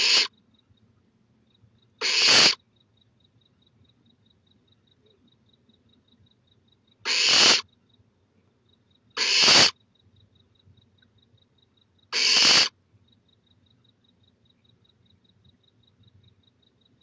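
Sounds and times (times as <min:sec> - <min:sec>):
owlet hissing call: 0:00.0 - 0:00.3, 0:02.0 - 0:02.6, 0:07.1 - 0:07.6, 0:09.2 - 0:09.8, 0:12.2 - 0:12.7.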